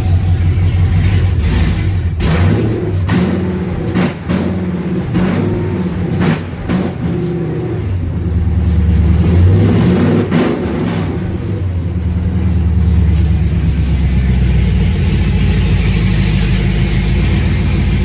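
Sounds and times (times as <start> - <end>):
car engine revving and idling: 0.0 - 18.0.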